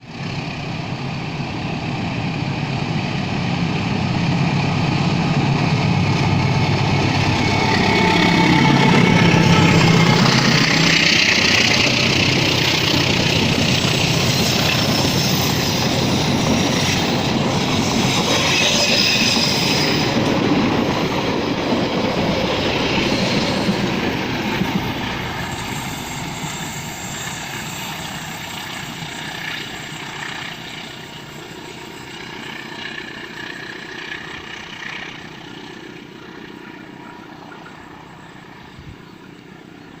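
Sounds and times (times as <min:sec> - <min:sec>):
train wheels clattering on rails: 0:03.6 - 0:38.7.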